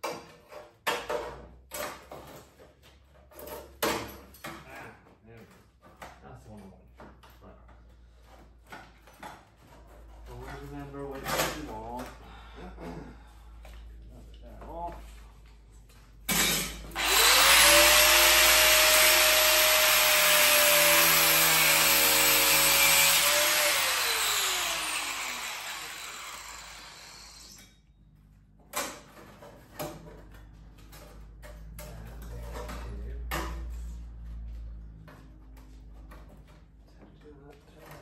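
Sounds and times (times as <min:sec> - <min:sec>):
power tool grinding sheet steel: 0:16.3 - 0:27.7.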